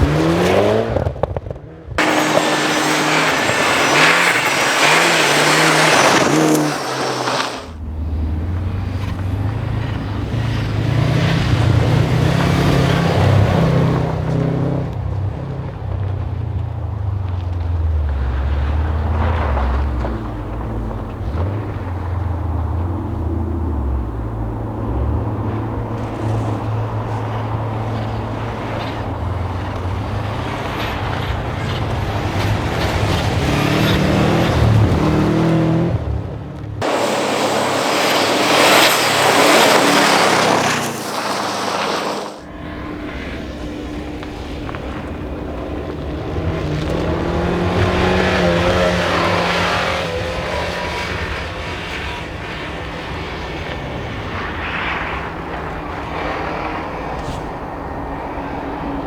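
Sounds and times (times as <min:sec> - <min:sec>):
rally car engine revving: 0:00.0 - 0:59.0
loud rushing hiss: 0:02.0 - 0:07.8, 0:36.8 - 0:42.4.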